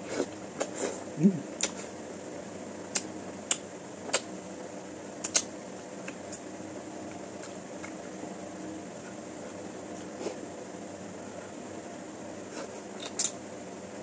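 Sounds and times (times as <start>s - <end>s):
fan hum: 0.0s - 14.0s
eating clicks and smacks: 2.9s - 4.3s, 5.2s - 6.4s, 13.0s - 13.4s.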